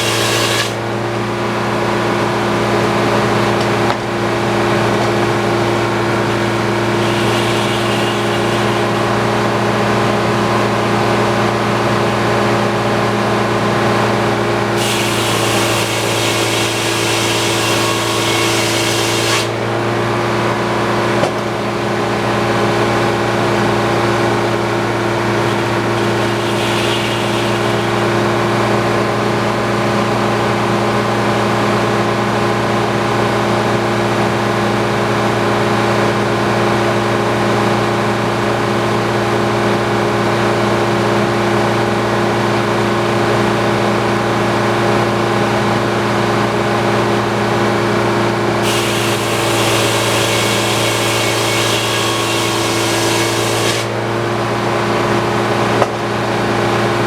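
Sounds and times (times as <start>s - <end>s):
saw blade cutting log: 0.0s - 1.1s, 4.9s - 10.6s, 14.6s - 19.8s, 23.1s - 29.1s, 48.6s - 54.1s
sawmill mechanical hum: 0.0s - 57.0s.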